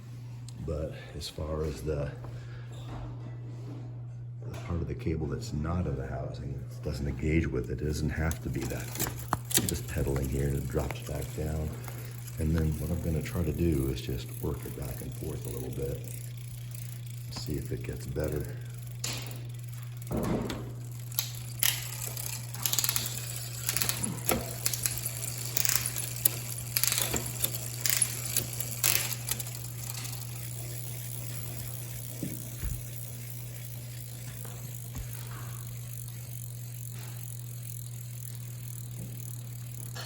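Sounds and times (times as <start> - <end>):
steady low hum: 0.0 - 40.0
bicycle drivetrain clicking and rattling: 6.9 - 40.0.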